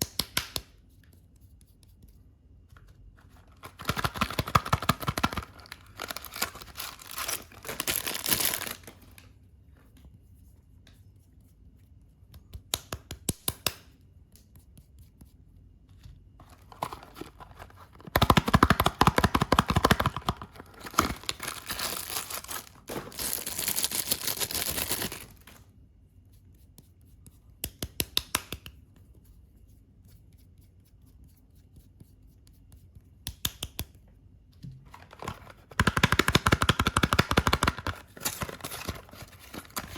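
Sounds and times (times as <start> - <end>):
packaging being torn and crinkled: 3.5 - 9.2, 16.4 - 25.6, 34.9 - 39.9.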